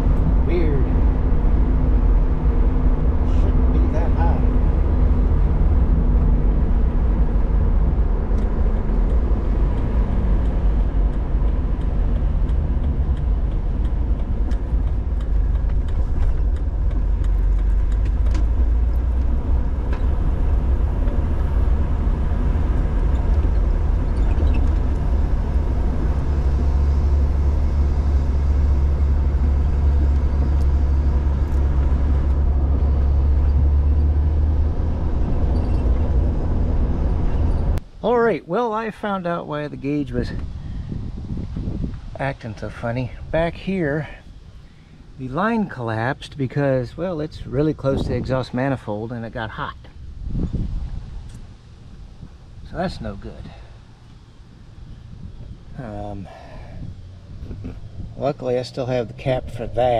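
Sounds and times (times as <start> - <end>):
car engine running: 0.0 - 37.8.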